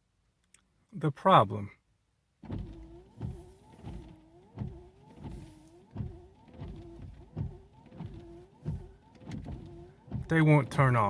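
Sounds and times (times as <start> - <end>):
low wiper thump: 2.4 - 11.0
wiper motor whine: 2.4 - 11.0.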